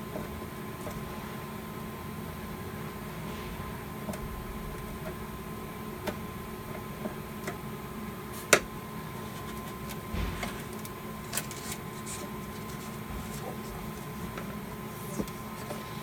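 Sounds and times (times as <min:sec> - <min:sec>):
panel parts clicking and knocking: 0:09.3 - 0:15.8.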